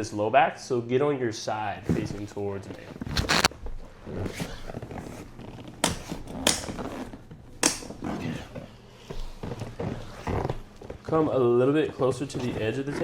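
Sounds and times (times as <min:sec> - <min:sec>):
rustling: 0:01.8 - 0:07.2.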